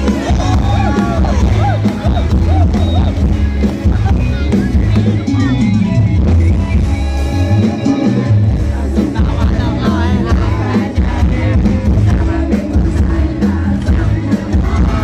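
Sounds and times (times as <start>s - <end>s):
person singing: 0.0s - 2.8s, 7.4s - 15.0s
live band with heavy bass beat: 0.0s - 15.0s.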